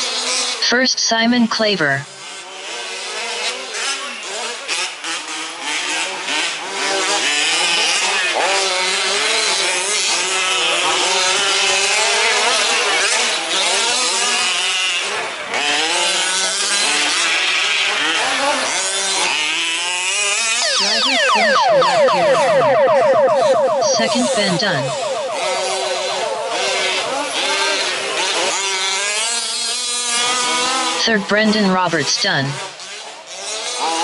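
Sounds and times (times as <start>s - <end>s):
small two-stroke engines revving: 0.0s - 0.6s, 2.1s - 21.4s, 25.7s - 31.4s, 32.6s - 34.0s.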